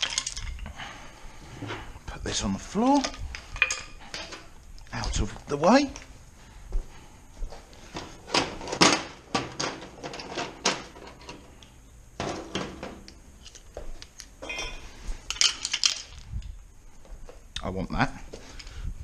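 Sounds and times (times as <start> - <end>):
metal parts clinking: 3.0 - 4.5, 13.4 - 16.3.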